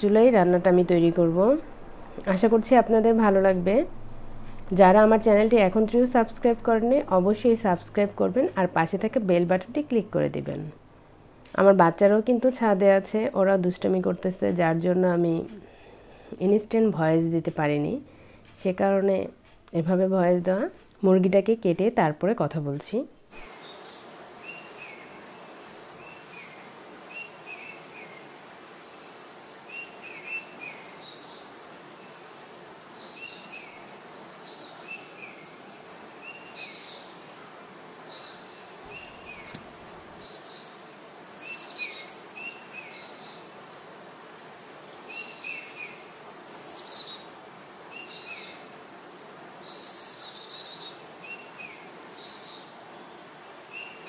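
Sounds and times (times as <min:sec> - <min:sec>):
steady background hiss: 0:00.0 - 0:54.0
small birds chirping: 0:23.4 - 0:44.2, 0:44.8 - 0:54.0.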